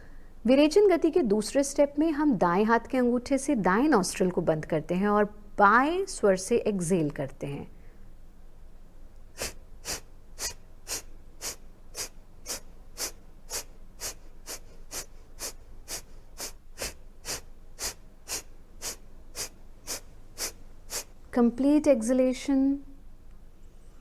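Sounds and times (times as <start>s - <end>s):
woman exhaling through nostril: 9.3s - 21.2s.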